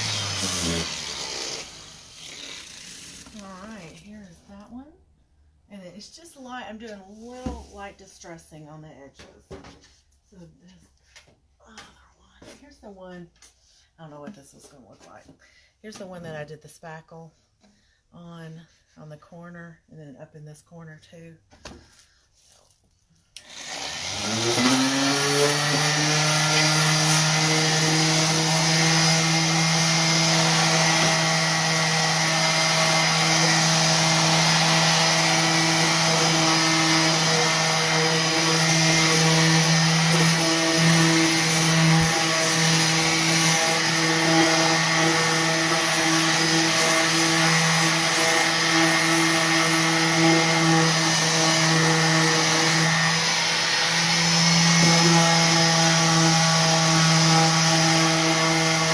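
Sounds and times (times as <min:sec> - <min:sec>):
electric orbital sander: 0:00.0 - 0:04.0, 0:23.4 - 0:58.9.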